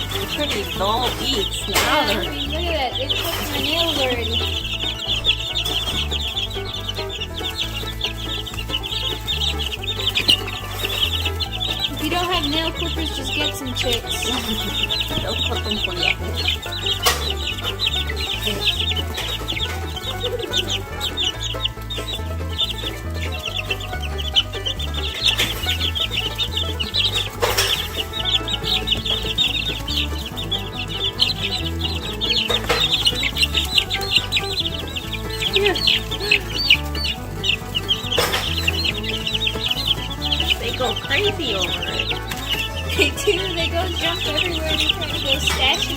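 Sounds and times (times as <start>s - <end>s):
background music with bass line: 0.0s - 45.9s
chicks peeping: 0.0s - 45.9s
sharp taps: 0.0s - 45.9s.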